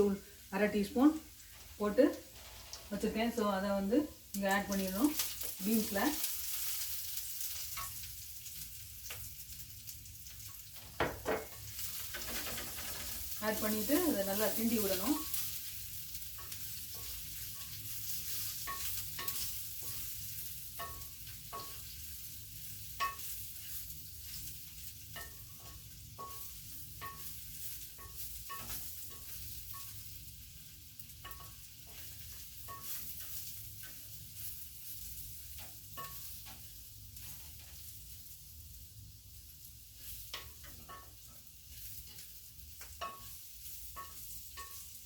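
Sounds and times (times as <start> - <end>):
frying sizzle: 0.0 - 45.0
spatula scraping and knocking pan: 10.5 - 30.2, 31.0 - 37.9, 40.0 - 45.0.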